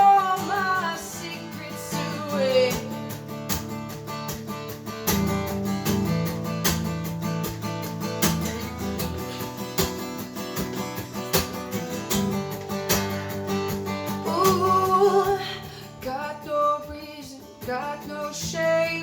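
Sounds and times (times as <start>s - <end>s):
acoustic guitar strumming: 0.0s - 19.0s.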